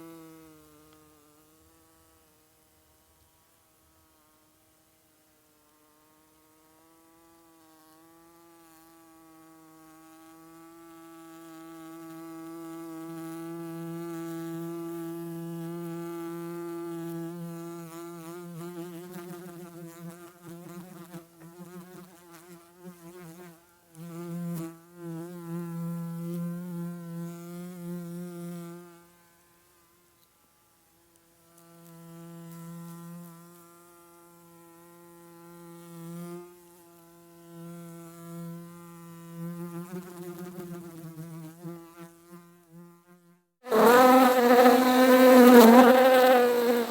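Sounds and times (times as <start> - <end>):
bee buzzing in flight: 7.0 - 29.1, 31.6 - 46.9.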